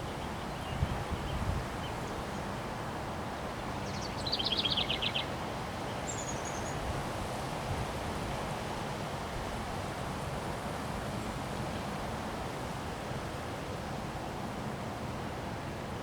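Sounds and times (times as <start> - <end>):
wind noise: 0.6 - 1.8.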